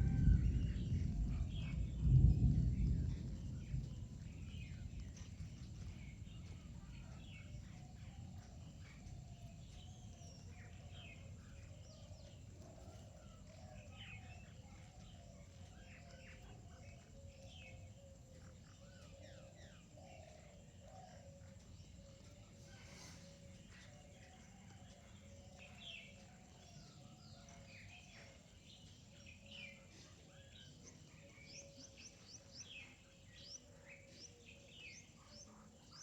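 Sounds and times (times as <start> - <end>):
low background rumble: 0.0 - 12.5
small birds chirping: 0.0 - 36.0.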